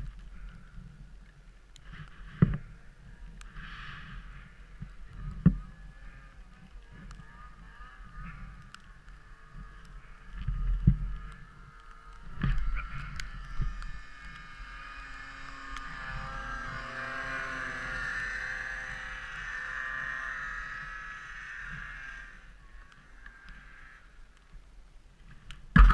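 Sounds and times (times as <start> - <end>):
motor engine running: 4.0 - 24.3.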